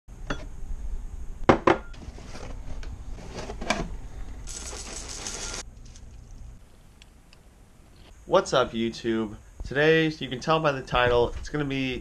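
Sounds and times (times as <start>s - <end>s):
rustling: 2.0s - 7.1s.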